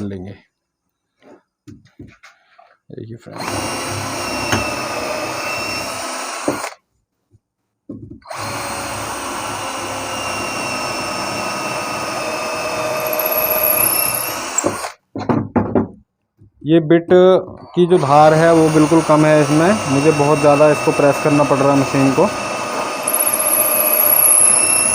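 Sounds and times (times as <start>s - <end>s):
cordless drill boring into wood: 3.4s - 6.8s, 8.3s - 15.0s, 17.9s - 24.9s.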